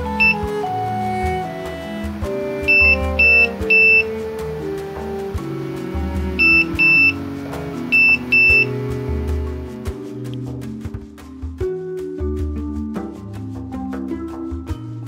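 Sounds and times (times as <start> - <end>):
background music: 0.0 - 15.0
security alarm beeps: 0.2 - 0.4, 2.7 - 4.1, 6.4 - 7.2, 7.9 - 8.7.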